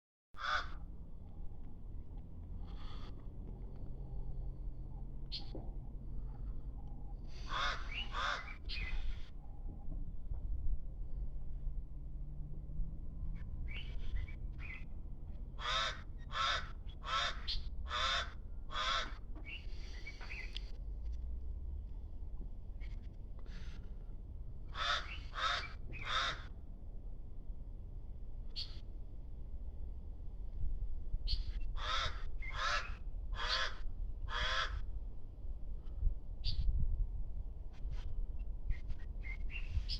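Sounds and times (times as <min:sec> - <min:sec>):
bird giving harsh calls: 0:00.4 - 0:00.8, 0:07.3 - 0:09.1, 0:15.6 - 0:20.5, 0:24.7 - 0:26.5, 0:31.3 - 0:34.8
steady low rumble: 0:00.4 - 0:39.9.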